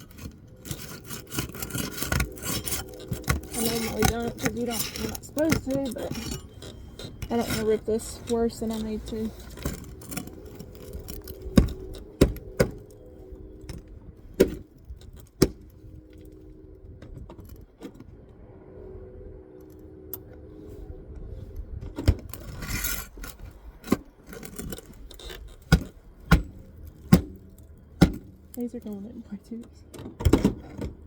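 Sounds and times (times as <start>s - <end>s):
scraping rustle: 0.0s - 19.0s, 20.4s - 29.6s
light metallic jangling: 0.1s - 13.8s
taps and knocks on roof shingles: 9.3s - 13.0s, 23.9s - 28.4s.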